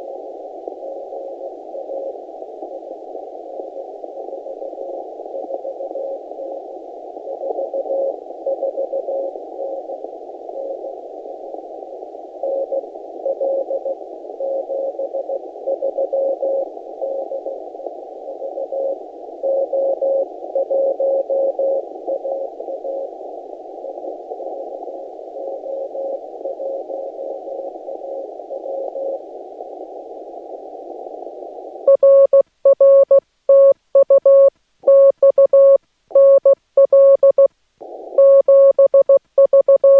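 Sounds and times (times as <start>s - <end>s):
morse code tone: 31.9s - 37.5s, 38.2s - 39.9s.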